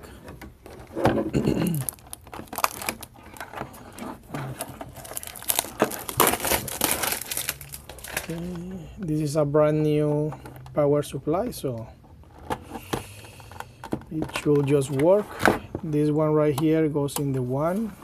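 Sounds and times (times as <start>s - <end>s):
crinkling rustling handling noise: 0.0s - 10.8s, 14.1s - 18.0s.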